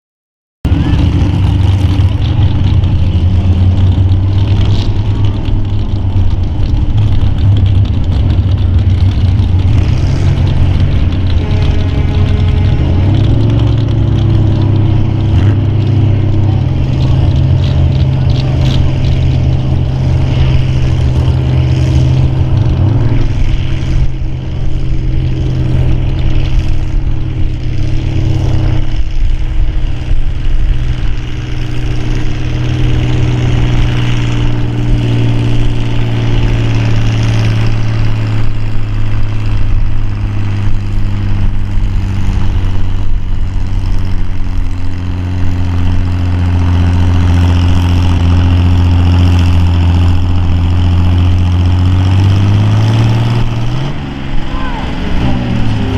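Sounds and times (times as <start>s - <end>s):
tractor engine running hard: 0.6s - 55.9s.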